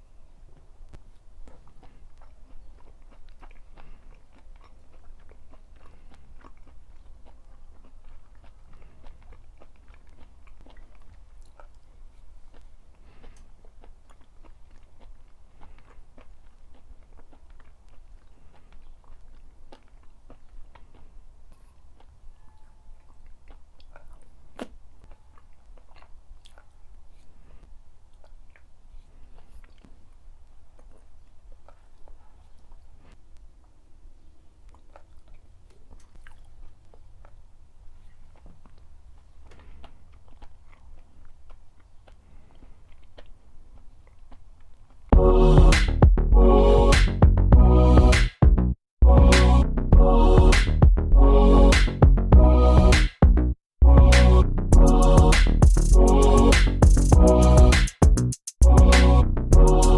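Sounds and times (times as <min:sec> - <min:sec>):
person chewing food: 0:00.1 - 0:48.2, 0:54.0 - 0:59.0, 0:59.6 - 0:59.9
wet mouth clicks: 0:00.5 - 0:33.8, 0:34.6 - 0:45.1, 0:46.9 - 0:47.2, 0:54.2 - 0:59.9.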